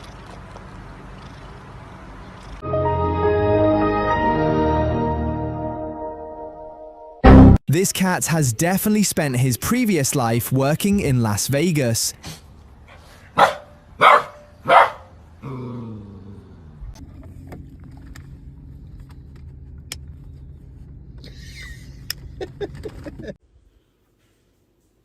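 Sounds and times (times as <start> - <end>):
dog barking: 13.3 - 15.2
low hum with clicks: 16.8 - 23.3.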